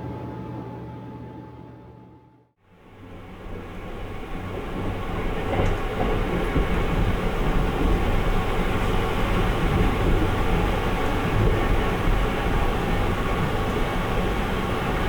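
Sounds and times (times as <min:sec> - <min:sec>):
train rumbling on rails: 0:02.6 - 0:15.0.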